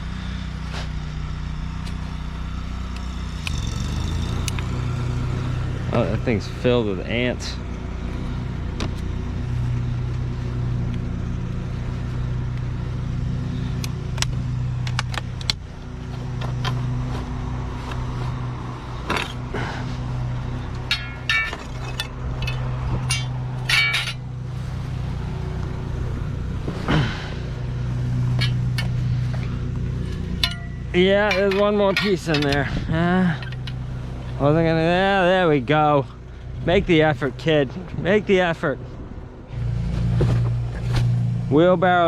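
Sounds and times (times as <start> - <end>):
vehicle engine idling: 0.0 - 42.0
scrap metal clanking: 19.0 - 24.8, 28.2 - 34.4.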